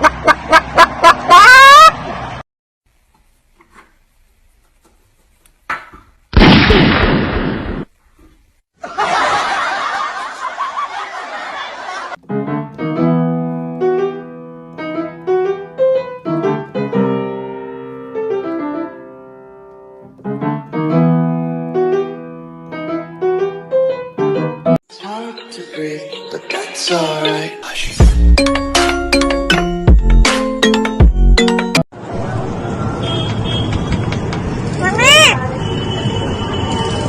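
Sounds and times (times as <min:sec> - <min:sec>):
piano-like keyboard music: 0:12.2 - 0:31.8.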